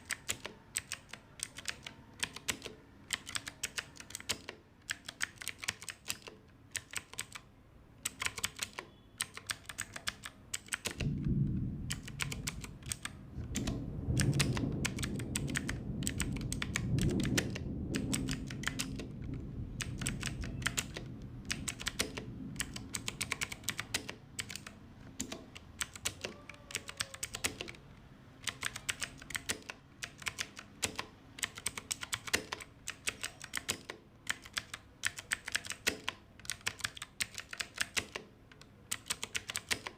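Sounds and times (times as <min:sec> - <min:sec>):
clicky mechanical keyboard typing: 0:00.0 - 0:27.8, 0:28.4 - 0:39.9
low rumble: 0:11.0 - 0:23.0.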